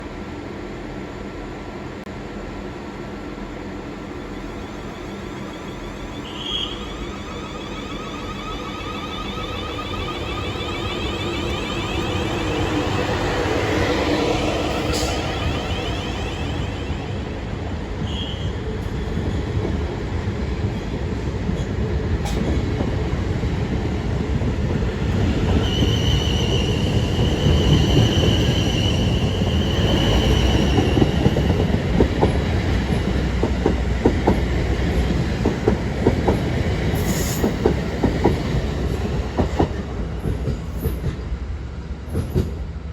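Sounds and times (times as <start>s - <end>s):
train rumbling: 0.0s - 42.9s
high wheel squeal: 4.2s - 18.6s, 25.1s - 31.7s.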